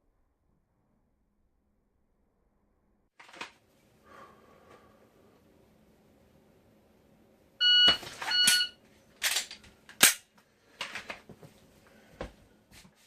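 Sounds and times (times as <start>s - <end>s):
shot timer beeps: 7.6s - 8.8s.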